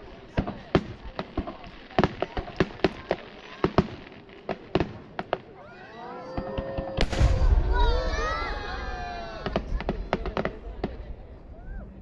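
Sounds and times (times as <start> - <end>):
fireworks bangs and cracks: 0.0 - 5.7, 6.3 - 12.0
whistling firework tones: 5.5 - 12.0.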